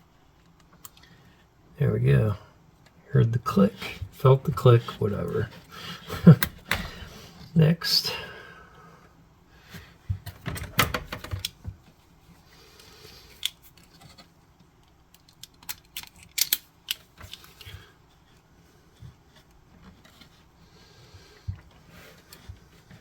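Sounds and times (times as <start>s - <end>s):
small tools and parts clicking: 14.8s - 17.8s.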